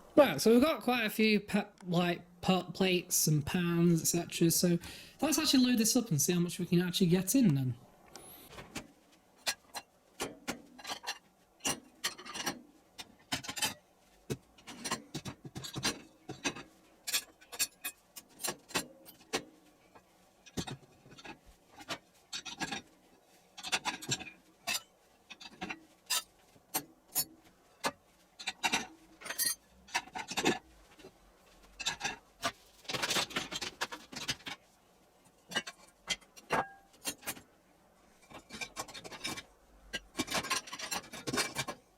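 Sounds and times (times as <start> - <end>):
dishes clinking: 35.5 - 37.4.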